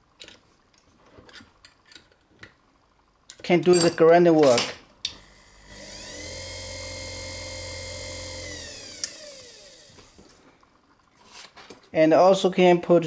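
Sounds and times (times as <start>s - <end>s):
electric motor whine: 5.1s - 10.5s.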